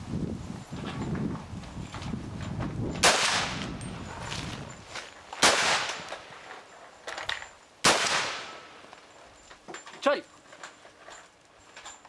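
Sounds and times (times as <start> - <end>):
rifle shots with ringing: 3.0 - 3.7, 5.4 - 6.3, 7.8 - 8.9.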